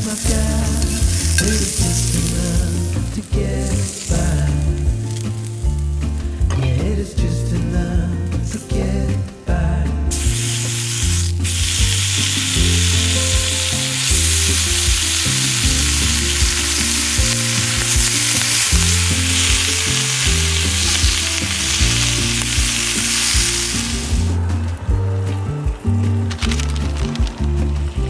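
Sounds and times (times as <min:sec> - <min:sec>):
food frying in a pan: 0:00.0 - 0:06.4, 0:10.1 - 0:24.4
background music with bass line: 0:00.0 - 0:28.0.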